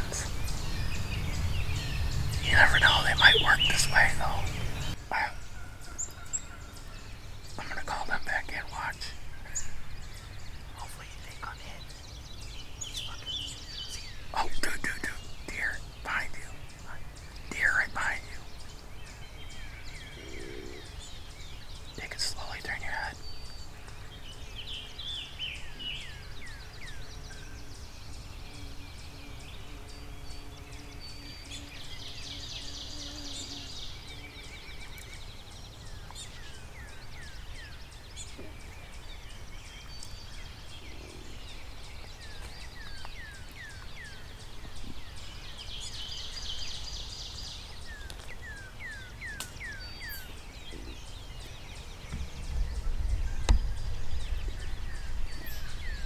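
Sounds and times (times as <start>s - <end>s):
songbirds whistling: 0.0s - 6.6s, 30.8s - 56.0s.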